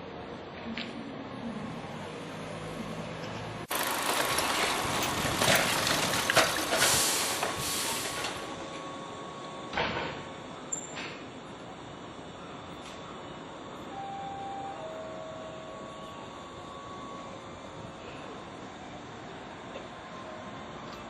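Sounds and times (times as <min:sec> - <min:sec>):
train wheels rumbling and rattling: 0:03.2 - 0:08.8.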